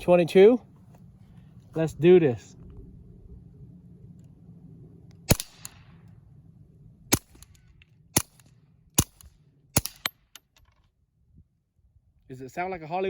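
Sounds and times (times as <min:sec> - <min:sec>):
suppressed gunshots: 0:05.3 - 0:06.0, 0:07.1 - 0:07.6, 0:08.2 - 0:10.3.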